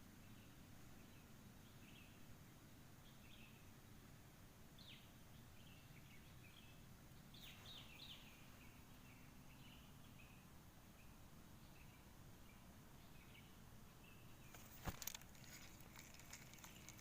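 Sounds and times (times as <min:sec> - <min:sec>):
birds chirping: 0:11.6 - 0:17.0.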